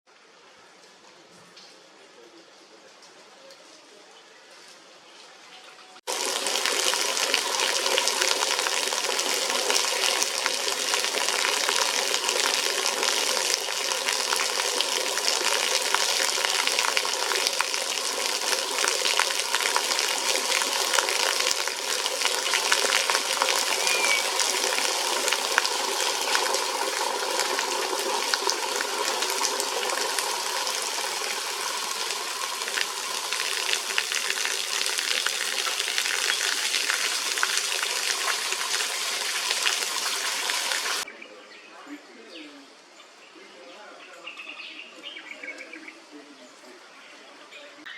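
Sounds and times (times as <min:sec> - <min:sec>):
crackling water rush: 0:06.1 - 0:41.1.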